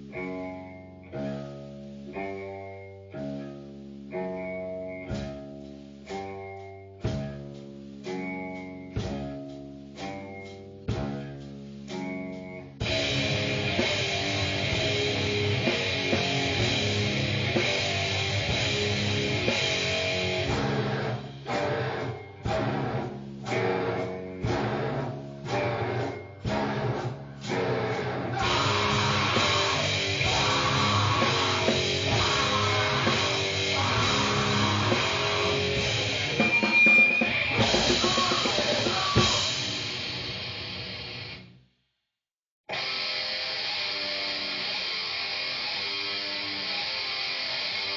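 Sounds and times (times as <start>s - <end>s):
noise rock band with drums: 0.0s - 41.8s, 42.7s - 47.9s
distorted guitar chord hits: 12.8s - 41.4s.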